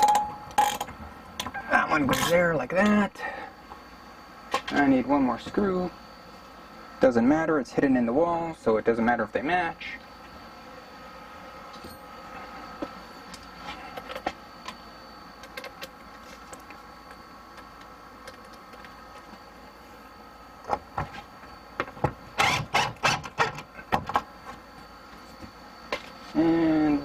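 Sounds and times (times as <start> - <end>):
air conditioner hum: 0.0 - 27.0.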